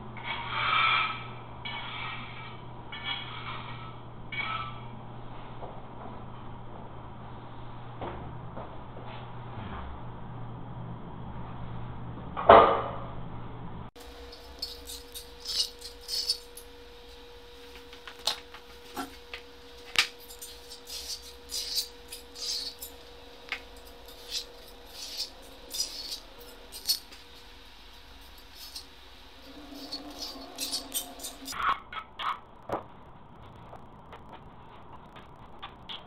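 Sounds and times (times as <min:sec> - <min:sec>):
faint steady hum: 0:13.0 - 0:36.0.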